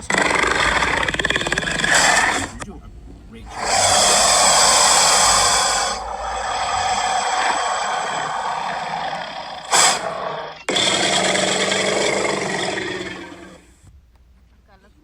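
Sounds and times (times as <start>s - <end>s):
dinosaur roar sound effect: 0.0s - 2.7s, 3.5s - 13.7s
sharp hiss: 3.5s - 13.6s.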